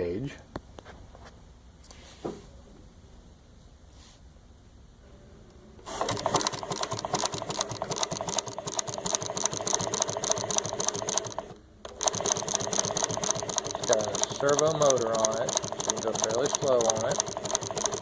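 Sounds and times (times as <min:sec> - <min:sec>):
industrial sewing machine stitching: 0:05.9 - 0:18.0.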